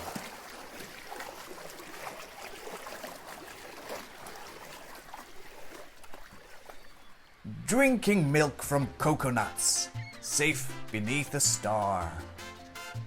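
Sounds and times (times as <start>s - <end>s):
water bubbling: 0.0s - 7.2s
water splashing and trickling: 0.0s - 13.0s.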